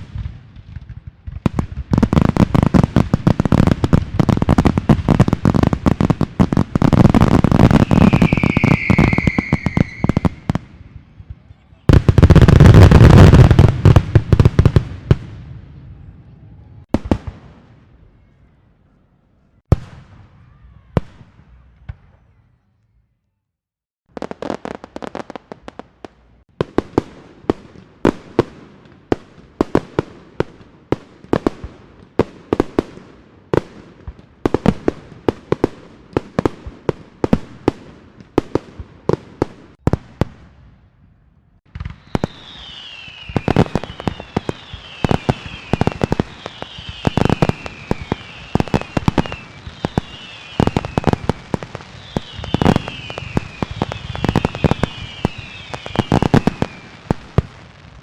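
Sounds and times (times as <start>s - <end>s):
fireworks banging: 0.0s - 15.6s, 41.7s - 58.0s
crackling firework bangs: 0.0s - 15.7s, 16.8s - 17.9s, 19.6s - 20.4s, 24.1s - 40.7s, 41.6s - 58.0s
falling firework whistles: 6.8s - 10.8s, 41.7s - 57.2s.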